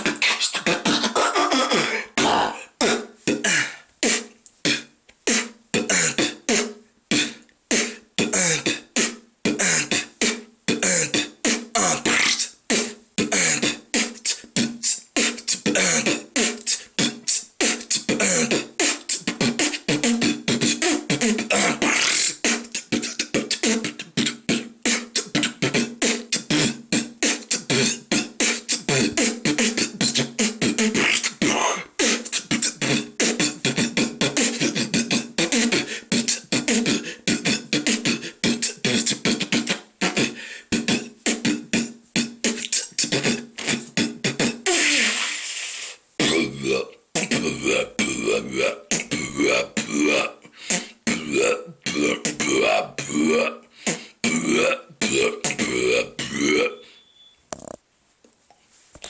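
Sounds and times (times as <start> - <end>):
person beatboxing: 0.0 - 57.0.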